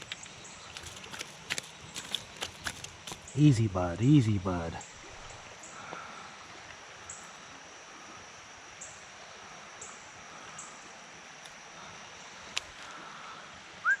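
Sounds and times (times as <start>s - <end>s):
creek water running over rocks: 0.0s - 8.7s.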